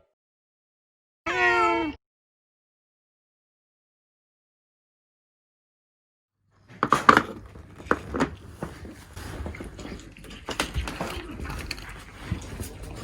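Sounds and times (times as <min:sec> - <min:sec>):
dishes and utensils clattering: 0:06.7 - 0:13.0.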